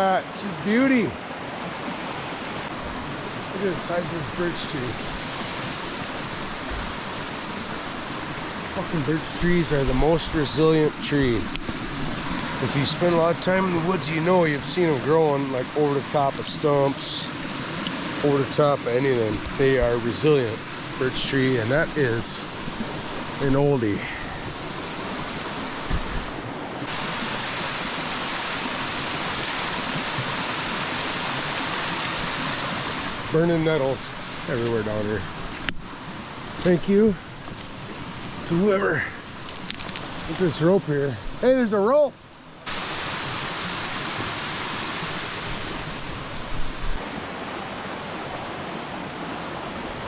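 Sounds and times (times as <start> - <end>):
waterfall rushing: 0.0 - 50.0
low bumps on microphone: 25.8 - 26.3.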